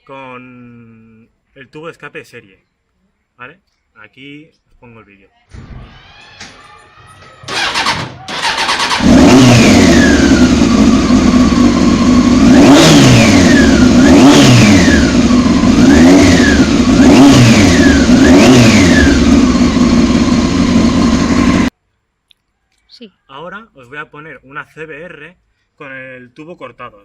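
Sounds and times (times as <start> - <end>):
motorcycle engine cranking: 5.9 - 21.6
motorcycle engine revving and idling: 7.4 - 21.7.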